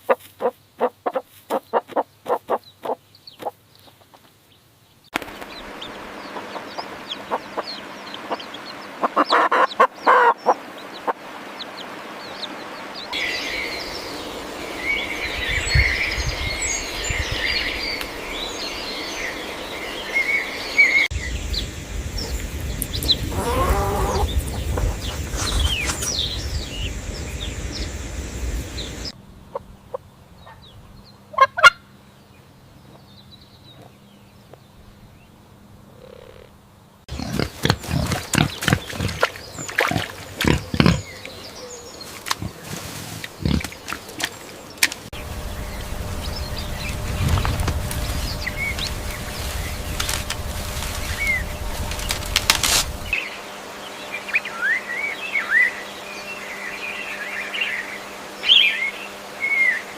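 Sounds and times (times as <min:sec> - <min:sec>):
farm animal calls: 0:00.0 - 0:04.1, 0:05.5 - 0:13.6, 0:23.1 - 0:26.2, 0:31.3 - 0:31.9, 0:35.9 - 0:44.6
low hum: 0:05.2 - 0:09.2, 0:10.6 - 0:32.8, 0:37.1 - 0:59.9.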